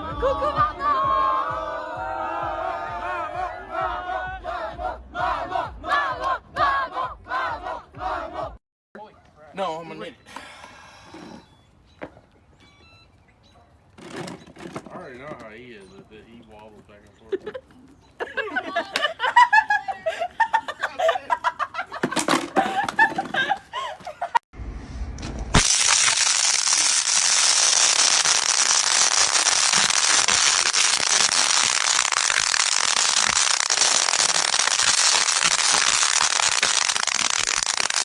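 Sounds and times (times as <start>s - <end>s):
man talking: 14.9s - 17.6s
loud dense crackling: 25.5s - 38.0s.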